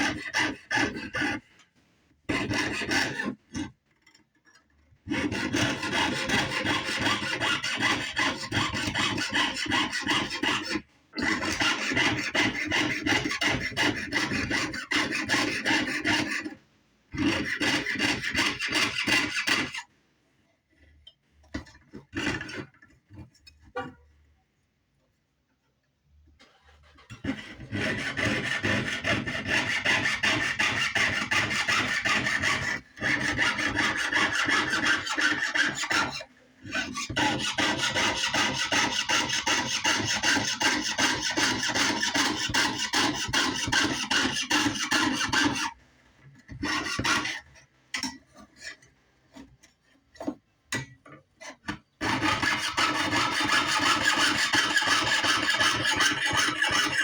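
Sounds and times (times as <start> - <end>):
saw cutting metal sheet: 0.0 - 1.5, 2.3 - 3.7, 5.1 - 19.9, 22.1 - 22.7, 26.6 - 45.8, 46.5 - 47.5, 52.0 - 57.0.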